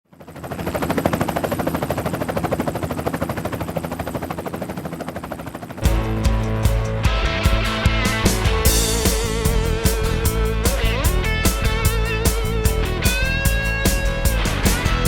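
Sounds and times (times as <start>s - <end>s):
helicopter rotor chopping: 0.1s - 15.0s
rock music with drums and guitar: 5.8s - 15.0s.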